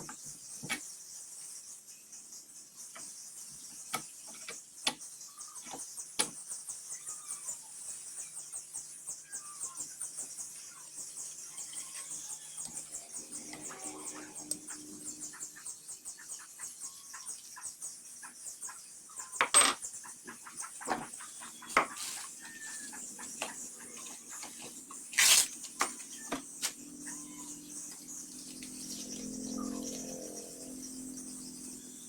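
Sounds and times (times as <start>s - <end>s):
high-pitched chirring: 12.8s - 15.7s, 21.4s - 32.0s
low hum: 26.8s - 32.0s.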